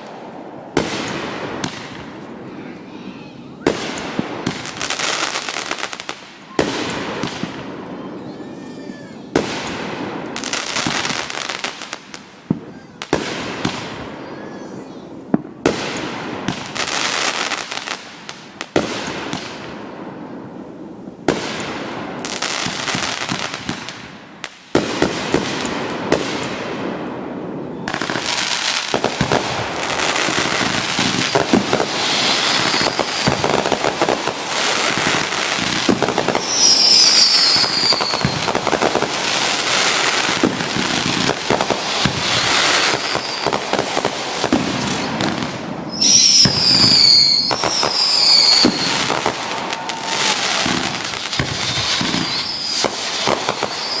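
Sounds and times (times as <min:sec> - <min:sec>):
firework bangs: 0:00.0 - 0:54.0
falling firework whistle: 0:06.5 - 0:09.8, 0:27.6 - 0:43.7, 0:44.4 - 0:54.0
barrage of crackles and pops: 0:27.8 - 0:54.0.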